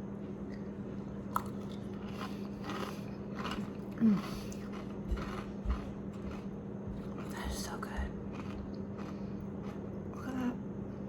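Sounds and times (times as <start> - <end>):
person chewing crunchy food: 1.1 - 10.3.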